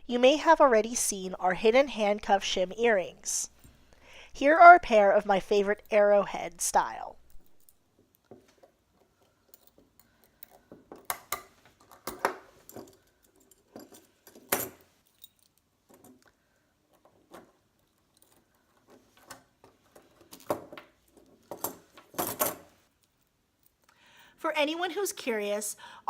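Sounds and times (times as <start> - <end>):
small metal clicks and clinks: 7.2 - 8.3, 9.0 - 19.0.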